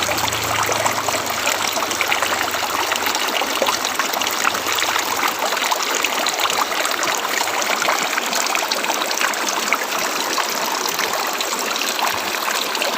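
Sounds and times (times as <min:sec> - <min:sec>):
river water rushing over rocks: 0:00.0 - 0:12.9.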